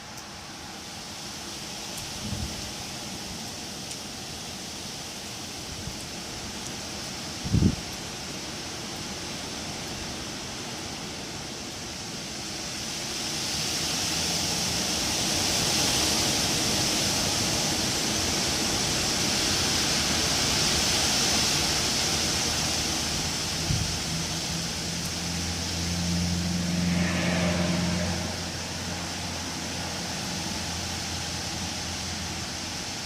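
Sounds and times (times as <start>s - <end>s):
leaves rustling: 0.0s - 33.0s
wind blowing through trees: 0.0s - 33.0s.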